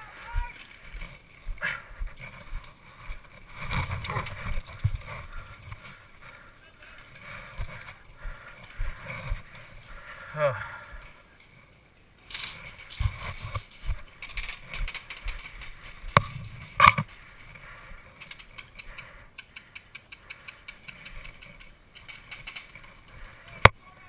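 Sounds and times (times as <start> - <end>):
gear rustling and clattering: 0.1 - 10.2, 11.0 - 23.7
fast mechanical ticks: 18.2 - 23.8
sharp clicks: 18.2 - 23.8.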